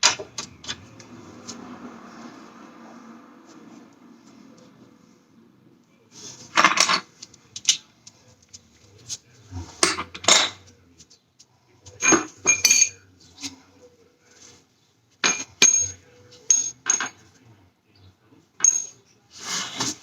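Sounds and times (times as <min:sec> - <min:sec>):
metal objects clanking: 0:12.0 - 0:13.0, 0:15.2 - 0:17.2.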